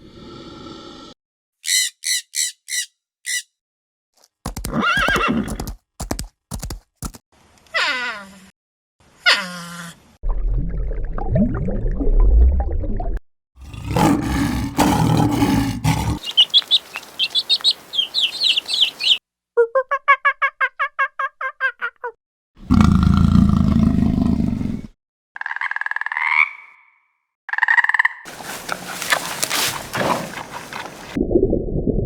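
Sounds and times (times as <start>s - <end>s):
fast pulsing animal call: 1.6s - 3.4s, 15.4s - 19.2s
high quick chirps: 1.6s - 3.5s, 16.2s - 19.2s
short higher animal calls: 1.6s - 3.5s
animal roaring: 13.6s - 16.3s, 22.6s - 24.9s.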